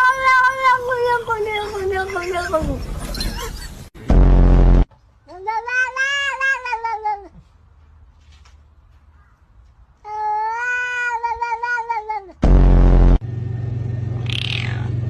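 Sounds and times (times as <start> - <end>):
loud low buzzing: 4.0 - 4.9, 12.4 - 15.0
cat meowing: 10.1 - 12.3.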